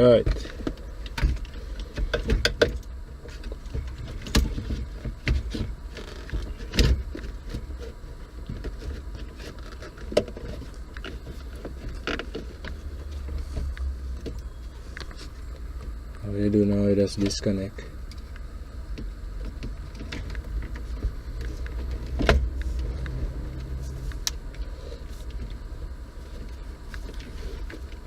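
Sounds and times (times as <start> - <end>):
steady low rumble: 10.0 - 28.0.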